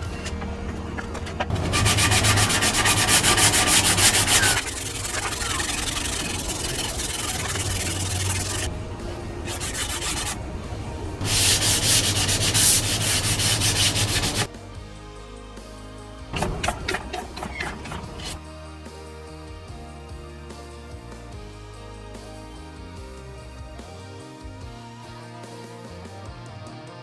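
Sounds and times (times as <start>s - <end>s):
sanding rasping hiss: 0.0s - 14.5s, 16.4s - 18.4s.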